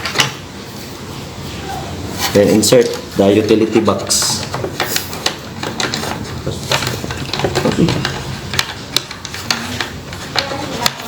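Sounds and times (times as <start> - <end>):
clicks and knocks of handling: 4.0 - 11.0.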